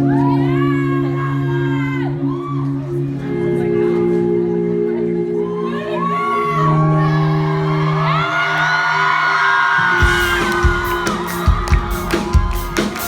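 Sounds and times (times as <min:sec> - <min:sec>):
crowd screaming and cheering: 0:00.0 - 0:03.6, 0:05.3 - 0:13.0
band playing synth chords: 0:00.0 - 0:13.0.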